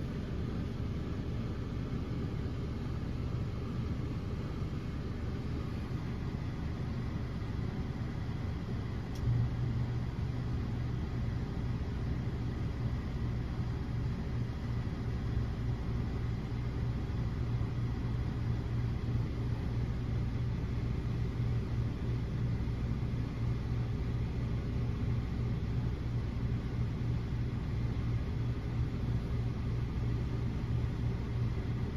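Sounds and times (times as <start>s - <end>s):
faint high whine: 0.0s - 31.9s
steady low hum: 0.0s - 31.9s
small click: 9.1s - 9.4s.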